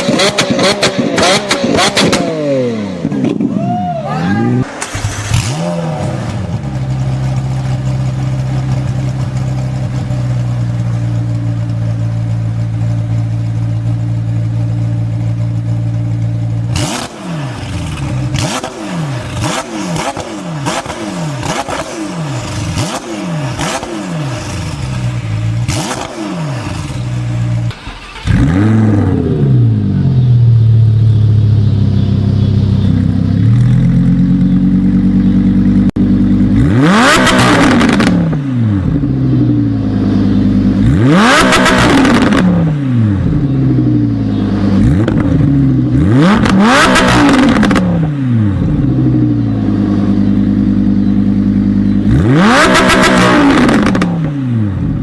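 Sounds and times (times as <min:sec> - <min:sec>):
engine revving with loud exhaust: 0:00.0 - 0:55.0
engine idling: 0:04.4 - 0:37.0, 0:47.5 - 0:52.5
exhaust pops and crackles: 0:06.2 - 0:14.0.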